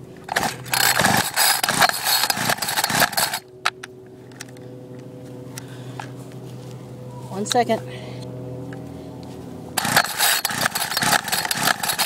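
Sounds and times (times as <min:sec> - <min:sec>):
string trimmer recoil starter cranking: 0:00.2 - 0:04.6, 0:09.8 - 0:12.0.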